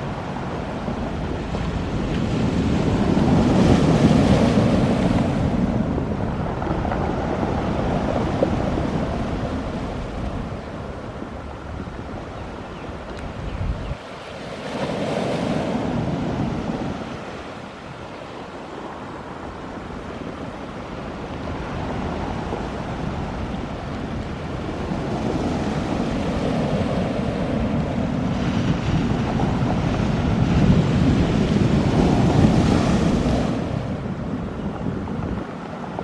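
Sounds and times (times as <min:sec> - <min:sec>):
jet engines roaring: 0:00.0 - 0:13.4
wind buffeting microphone: 0:00.0 - 0:36.0.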